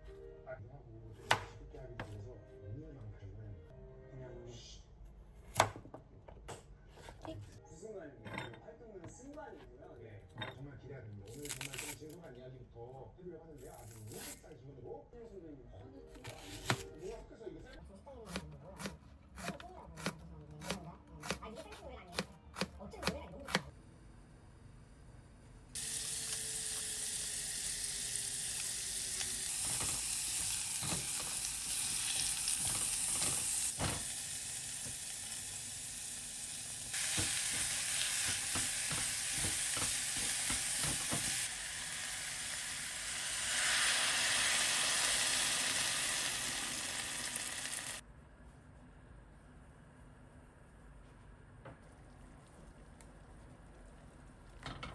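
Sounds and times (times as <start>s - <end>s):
knife chopping on cutting board: 1.2s - 2.1s, 18.3s - 23.6s
food sizzling in a frying pan: 25.8s - 48.0s.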